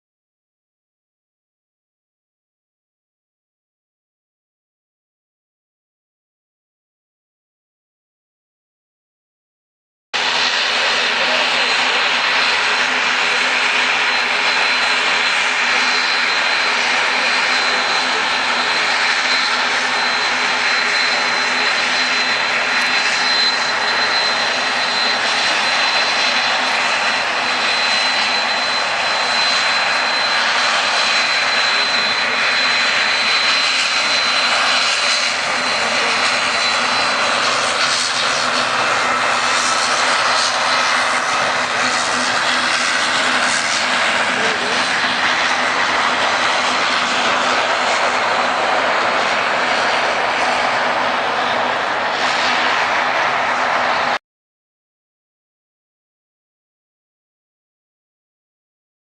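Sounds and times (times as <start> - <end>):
high engine whine: 10.2 - 54.2
jet engine roar: 10.2 - 54.2.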